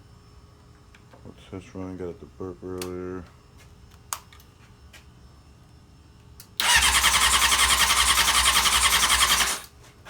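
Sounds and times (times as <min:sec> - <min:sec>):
motorcycle starter cranking: 0:06.6 - 0:09.7.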